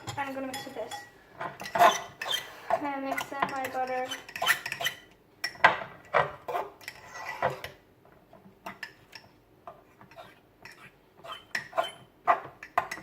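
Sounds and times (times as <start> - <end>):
utensil scraping mixing bowl: 1.6 - 5.1, 6.2 - 7.8, 8.7 - 13.0.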